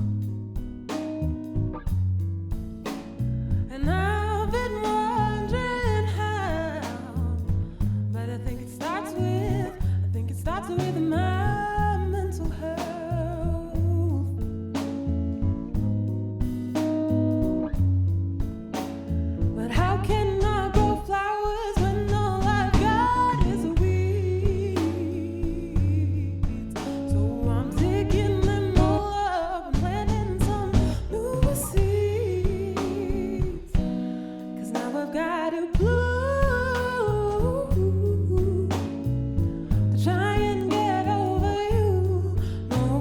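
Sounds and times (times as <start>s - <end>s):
band playing guitar bass and drums: 0.0s - 35.0s, 35.8s - 43.0s
woman singing: 3.6s - 14.5s, 19.5s - 43.0s.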